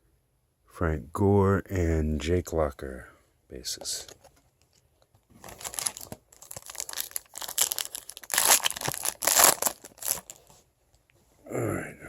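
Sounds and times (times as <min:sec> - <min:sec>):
wrapper crinkling and tearing: 0:05.4 - 0:10.6.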